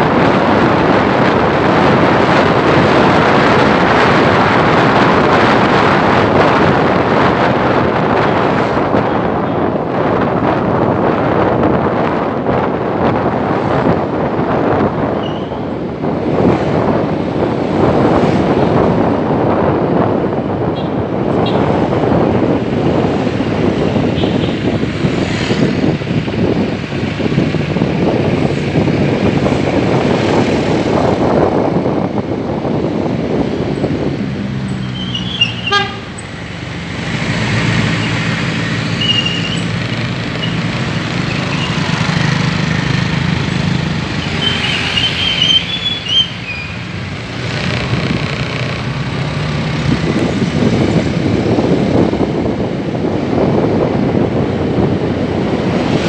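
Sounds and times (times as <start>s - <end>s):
vehicle engines running: 0.0s - 56.0s
car horn tooting: 35.0s - 36.2s.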